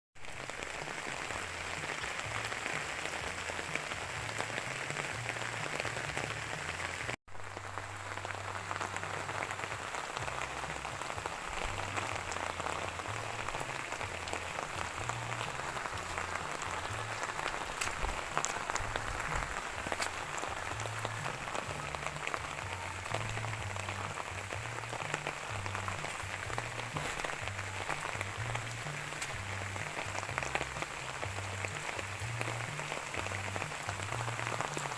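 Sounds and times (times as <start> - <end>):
rain pattering: 0.2 - 34.9
sharp raindrop hits: 0.2 - 34.9.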